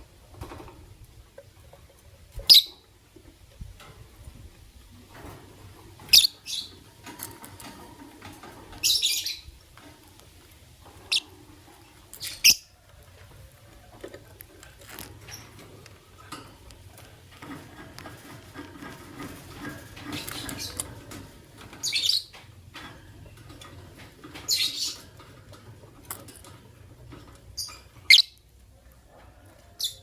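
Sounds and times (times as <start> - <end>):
faint scratching and shuffling: 0.0 - 30.0
birds chirping shrilly: 8.8 - 9.6.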